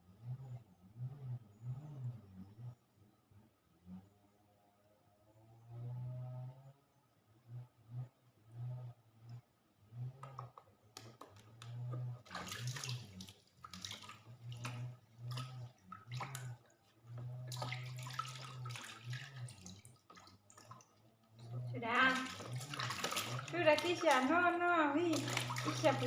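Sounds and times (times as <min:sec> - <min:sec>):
low hum: 0:00.0 - 0:26.0
water splashing and pouring: 0:12.2 - 0:26.0.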